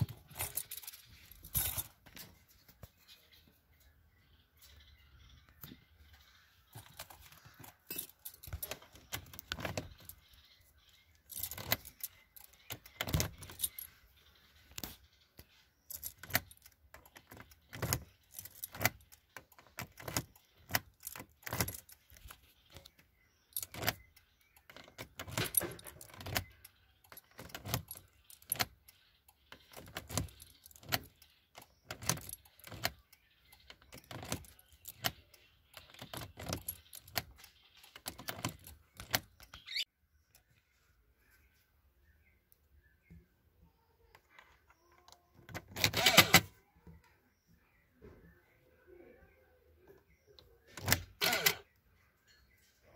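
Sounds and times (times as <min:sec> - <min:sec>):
small metal objects clinking: 0:00.0 - 0:02.2.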